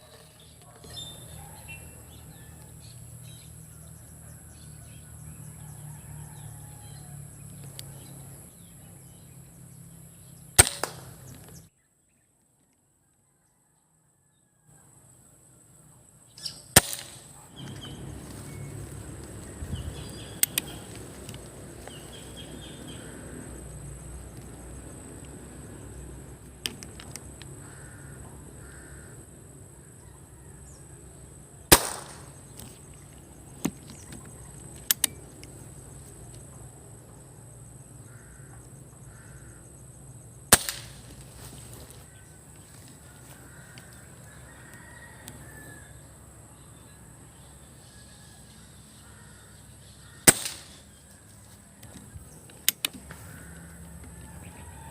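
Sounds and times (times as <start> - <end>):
birds calling: 0.0 - 11.7, 16.2 - 30.9, 31.5 - 46.0, 46.6 - 54.9
air rifle shots: 10.6 - 11.3, 16.8 - 17.4, 31.7 - 32.5, 40.5 - 41.2, 50.2 - 50.9
quiet clicks: 20.2 - 22.0.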